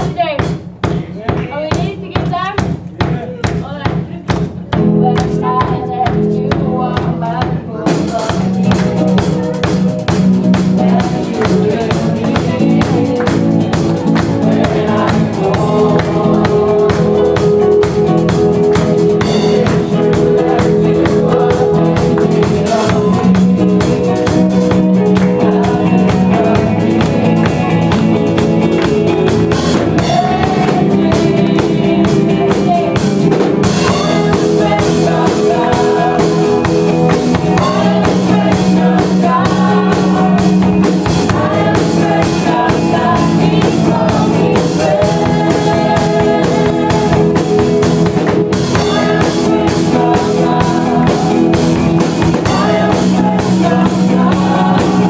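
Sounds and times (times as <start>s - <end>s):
drum kit: 0.0s - 55.0s
guitar: 0.0s - 55.0s
person singing: 4.8s - 55.0s.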